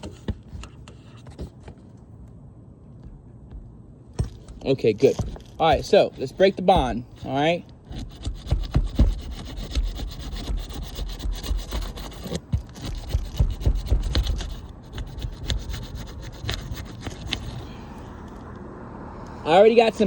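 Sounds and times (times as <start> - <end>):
crowbar scraping under shingle: 4.2 - 17.7.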